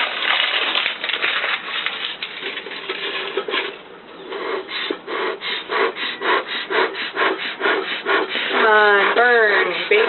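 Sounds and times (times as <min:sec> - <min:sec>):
bellows puffing air: 0:03.0 - 0:10.0.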